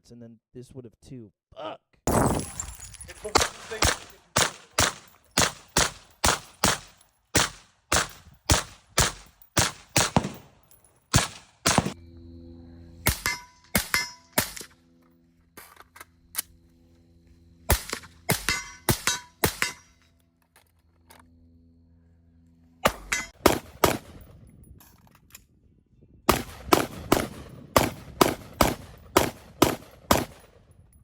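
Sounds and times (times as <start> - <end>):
steady low hum: 2.1 - 31.0
gunshots: 3.2 - 12.0, 13.0 - 14.7, 17.7 - 19.8, 22.8 - 24.3, 26.3 - 30.6.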